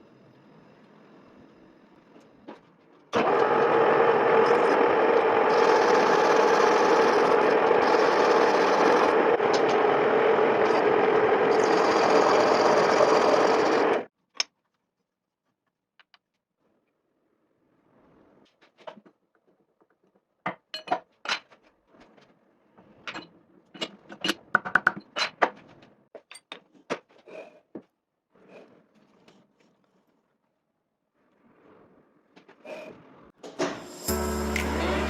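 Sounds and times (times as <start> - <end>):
lathe running: 3.2 - 14.1, 33.9 - 35.0.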